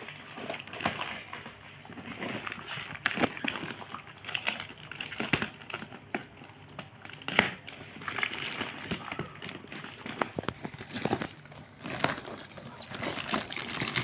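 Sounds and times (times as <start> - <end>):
toy packaging crinkling: 9.6 - 14.0.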